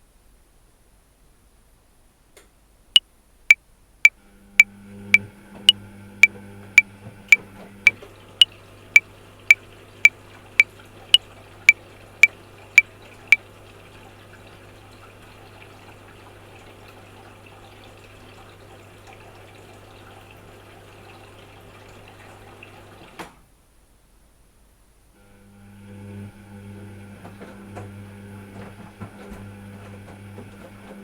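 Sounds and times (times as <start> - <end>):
washing machine running: 4.4 - 23.3, 25.2 - 31.0.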